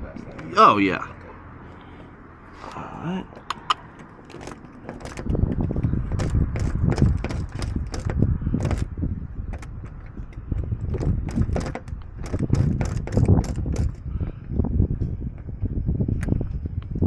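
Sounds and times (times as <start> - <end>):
steady low rumble: 0.0 - 17.0
lock-picking tools clicking in lock: 6.1 - 8.9, 9.5 - 14.0.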